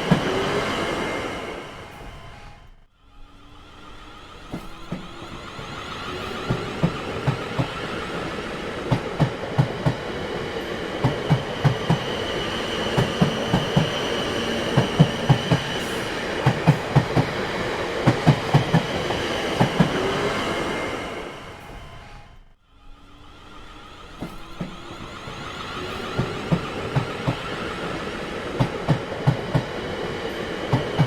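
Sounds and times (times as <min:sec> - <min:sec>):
train rolling rumble: 0:00.0 - 0:31.0
train wheels clacking over rail joints: 0:04.3 - 0:20.4, 0:24.0 - 0:31.0.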